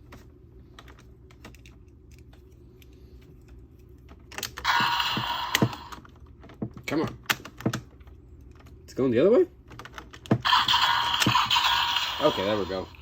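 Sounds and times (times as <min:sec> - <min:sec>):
electronic toy sound effect: 0:04.7 - 0:06.0, 0:10.5 - 0:13.0.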